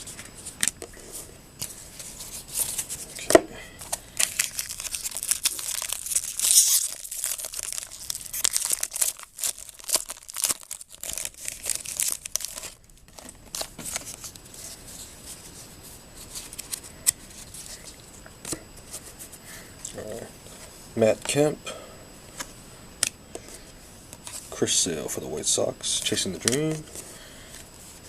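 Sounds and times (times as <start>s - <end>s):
cards rustling and flicking: 0.0s - 15.6s, 26.0s - 27.0s
foil wrapper tearing and crinkling: 3.8s - 14.4s.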